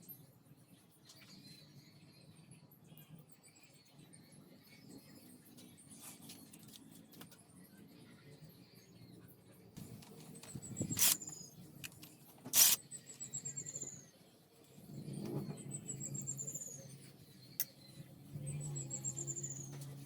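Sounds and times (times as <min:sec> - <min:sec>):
metal tools clinking: 0:10.9 - 0:11.2.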